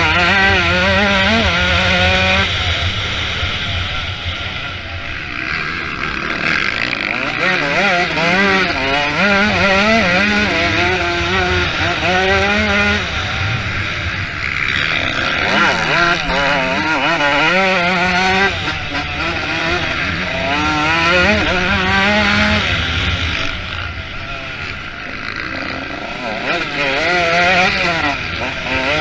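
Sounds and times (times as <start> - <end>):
motocross engines racing: 0.0 - 29.0.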